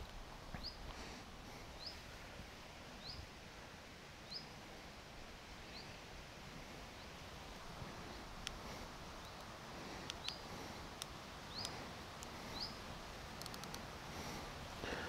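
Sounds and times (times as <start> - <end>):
low outdoor hum: 0.0 - 15.0
bird chirping: 10.2 - 10.5, 11.5 - 11.8, 12.4 - 12.8.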